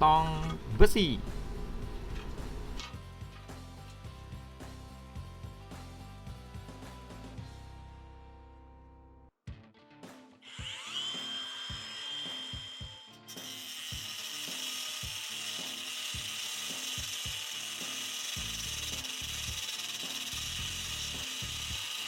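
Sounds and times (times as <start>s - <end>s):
angle grinder whining: 10.4s - 22.0s
grinder cutting into iron: 10.4s - 22.0s.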